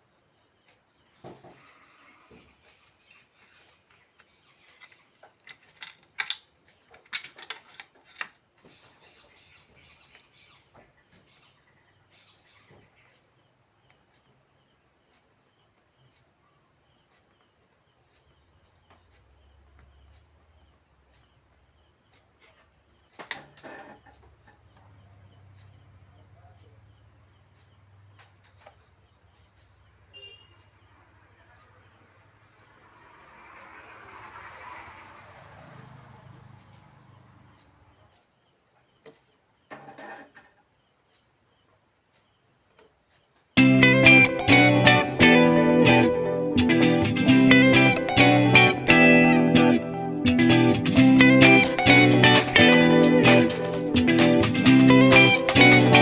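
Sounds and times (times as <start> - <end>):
insect chirping: 0.0 - 44.2.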